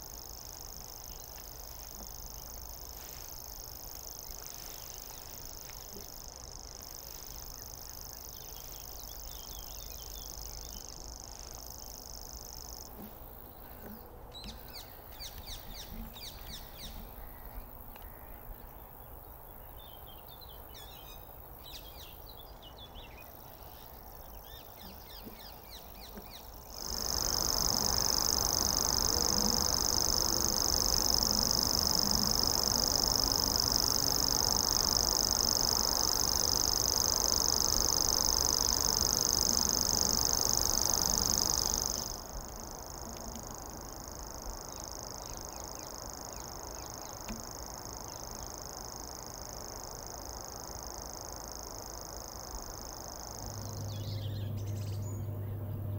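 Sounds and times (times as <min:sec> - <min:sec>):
high-pitched buzz: 0:26.6 - 0:47.5
small birds chirping: 0:53.4 - 0:55.9.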